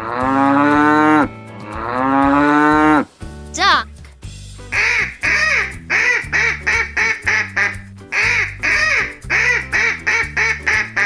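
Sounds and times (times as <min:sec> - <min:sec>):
background music: 0:00.0 - 0:11.0
duck quacking: 0:04.8 - 0:11.0.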